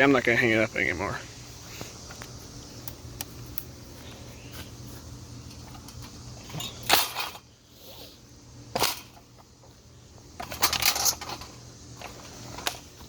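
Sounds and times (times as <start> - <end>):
metallic clanks and clattering: 5.5 - 7.4, 10.4 - 12.8.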